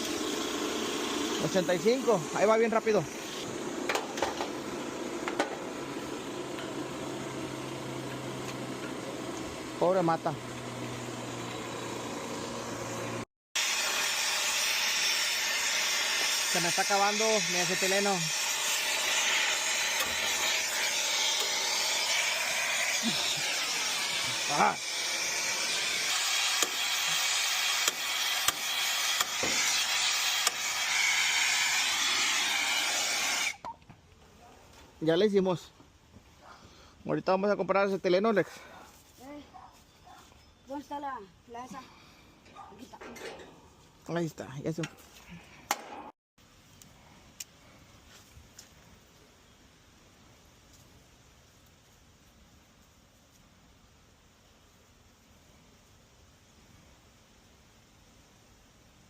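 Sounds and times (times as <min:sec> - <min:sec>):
machine humming and hissing: 0:00.0 - 0:33.0.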